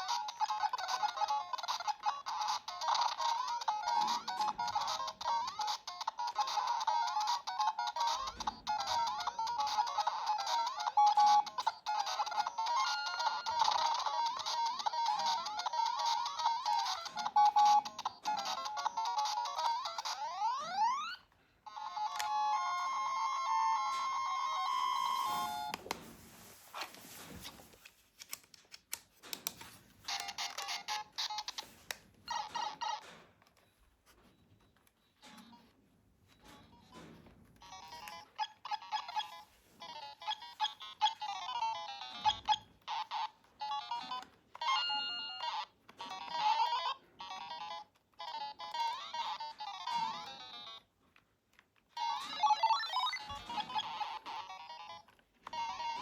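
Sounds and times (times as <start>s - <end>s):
electronic beeping tones: 52.0s - 54.1s.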